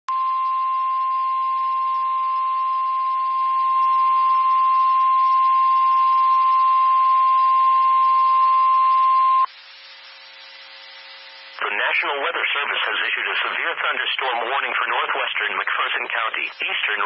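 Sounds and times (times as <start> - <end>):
steady alarm tone: 0.1 - 11.6
faint radio hiss: 9.6 - 17.0.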